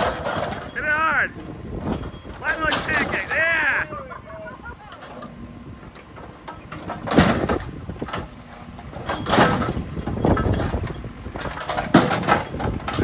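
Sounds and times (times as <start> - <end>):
loud metal crashes: 0.0 - 3.8, 6.8 - 8.3, 8.9 - 13.0
excavator engine running: 0.0 - 13.0.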